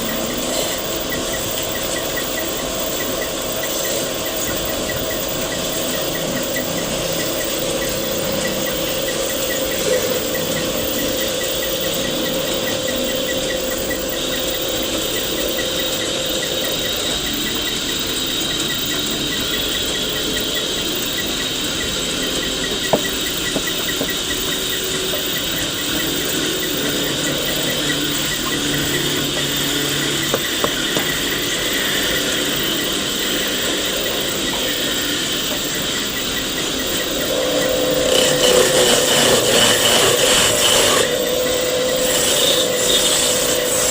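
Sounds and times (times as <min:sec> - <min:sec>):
light even ticking: 0:00.0 - 0:43.9
wood lathe cutting wood: 0:02.8 - 0:43.9.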